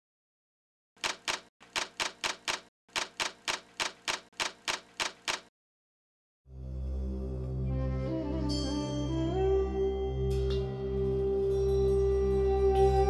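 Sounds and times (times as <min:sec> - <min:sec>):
typewriter key strikes: 0:01.0 - 0:05.5
music: 0:06.5 - 0:13.0.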